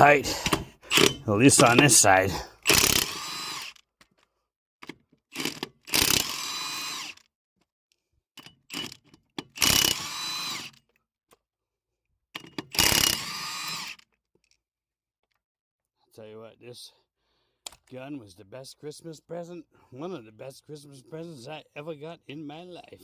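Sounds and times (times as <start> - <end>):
impact wrench on lug nuts: 0.0 - 3.7, 5.4 - 7.1, 8.7 - 10.7, 12.4 - 14.0.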